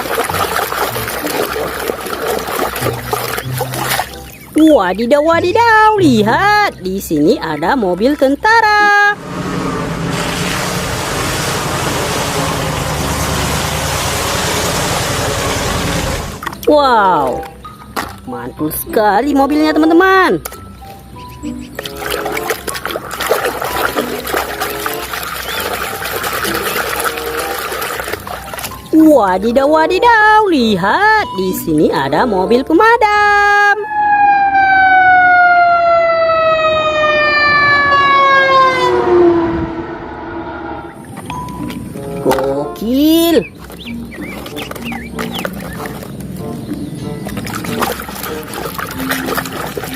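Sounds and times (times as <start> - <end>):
water spraying: 0.0 - 4.6, 9.2 - 16.6, 21.7 - 29.0, 41.0 - 49.9
fire engine siren falling tone: 9.1 - 16.4, 33.7 - 42.1.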